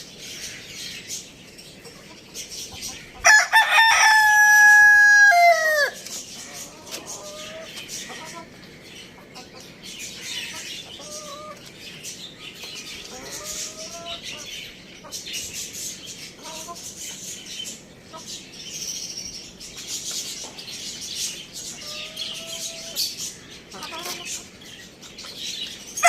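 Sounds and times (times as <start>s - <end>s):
chickens clucking: 0.0s - 26.0s
high-pitched chirping chatter: 0.0s - 26.0s
chicken rising call: 3.2s - 6.0s.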